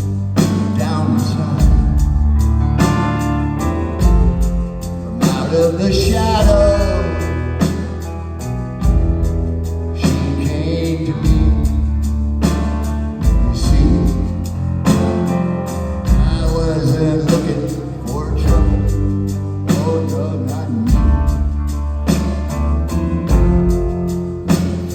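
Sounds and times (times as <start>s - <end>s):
live rock band playing: 0.0s - 24.9s
lead vocal singing: 5.1s - 7.8s, 10.0s - 11.9s, 16.1s - 21.2s.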